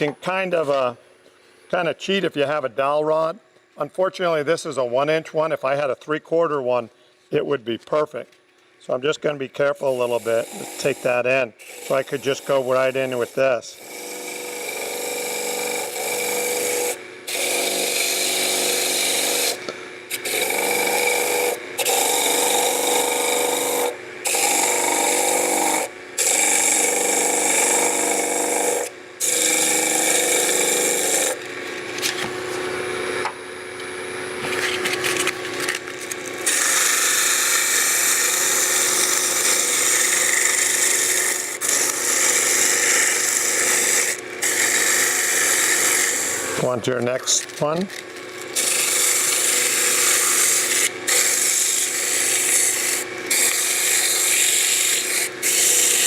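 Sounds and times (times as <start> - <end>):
sandpaper rasping on spinning wood: 36.5 - 47.4, 48.6 - 56.0.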